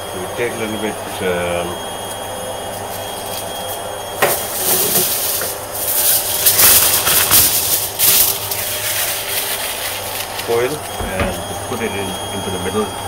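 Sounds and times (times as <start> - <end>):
aluminium foil crumpling: 2.7 - 11.5.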